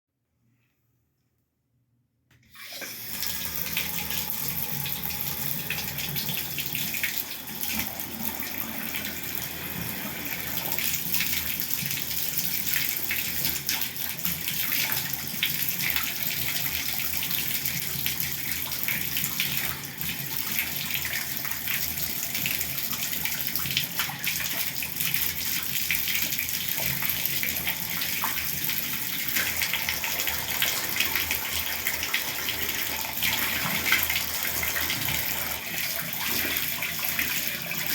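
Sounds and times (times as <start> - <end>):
shower water spraying: 18.8 - 37.9.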